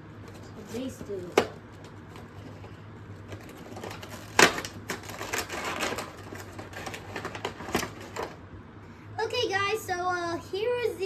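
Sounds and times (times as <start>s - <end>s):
toy packaging clicks and rattles: 3.3s - 8.4s.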